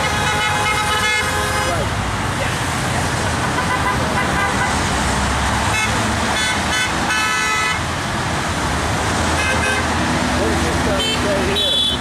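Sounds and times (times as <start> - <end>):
car horns honking: 0.0 - 1.9, 3.4 - 4.9, 5.6 - 7.9, 9.3 - 10.0, 10.8 - 12.0
road traffic rushing: 0.0 - 12.0.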